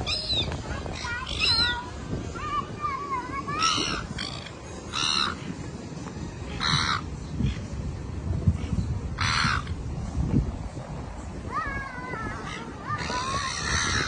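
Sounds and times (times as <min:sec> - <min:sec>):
bird harsh calls: 0:03.5 - 0:05.5.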